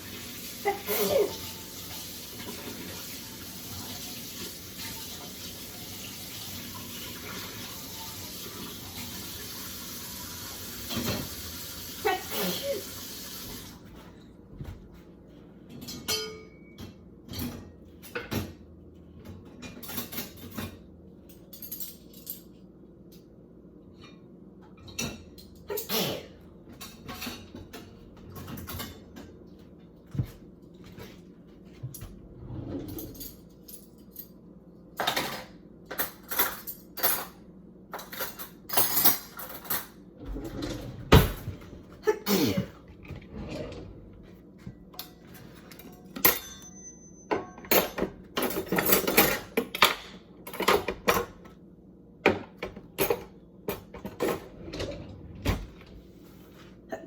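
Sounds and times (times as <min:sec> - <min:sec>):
dishes and cutlery clinking: 0:15.7 - 0:18.6, 0:45.0 - 0:51.4.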